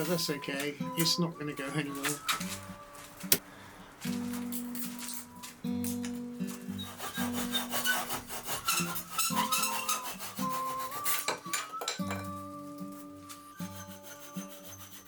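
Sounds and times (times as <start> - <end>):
background music with held notes: 0.0 - 15.0
hand tool rasping wood: 6.5 - 11.4, 13.6 - 15.0.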